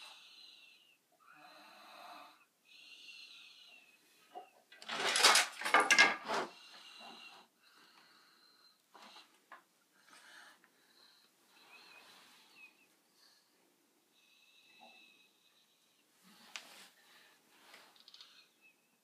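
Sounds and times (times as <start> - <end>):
soft wheezy breathing: 0.0 - 4.6, 6.5 - 18.8
person snoring: 1.2 - 3.4.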